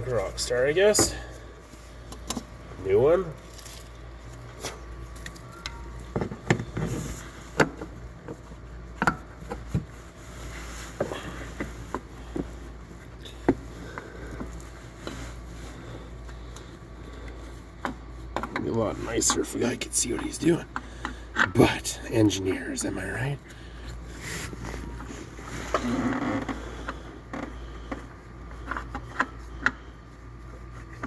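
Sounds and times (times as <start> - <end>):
low steady hum: 0.0 - 31.0.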